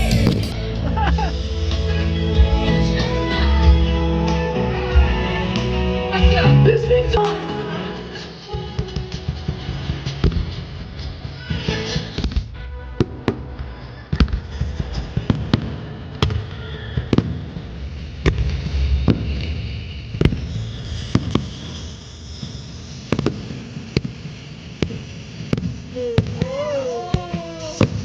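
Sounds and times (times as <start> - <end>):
firework bangs: 0.0 - 0.6, 8.8 - 28.0
low rumble: 0.0 - 24.8.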